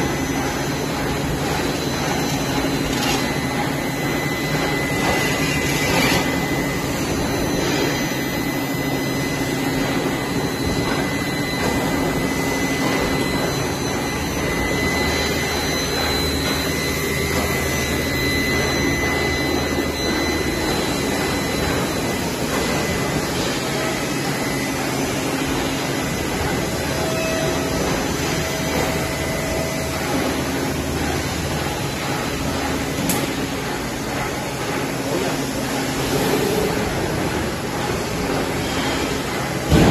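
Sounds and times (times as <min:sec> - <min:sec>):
thin high whine: 0:01.7 - 0:33.2.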